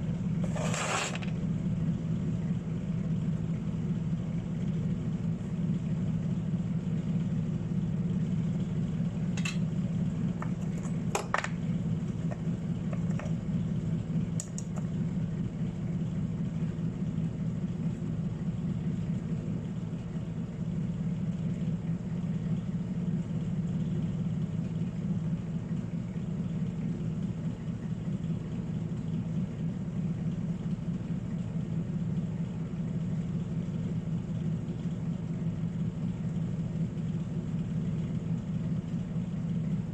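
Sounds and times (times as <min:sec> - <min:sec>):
low machine hum: 0:00.0 - 0:39.9.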